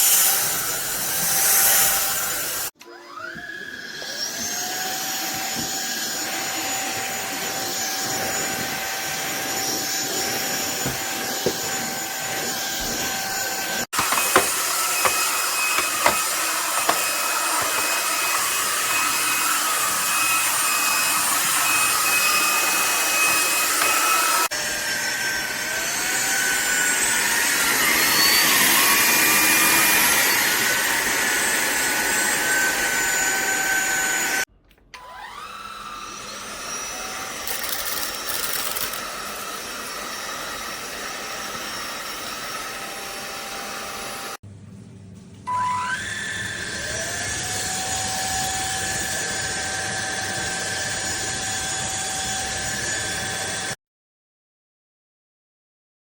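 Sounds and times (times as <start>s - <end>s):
vacuum cleaner motor whine: 0.0s - 44.4s, 45.5s - 53.8s.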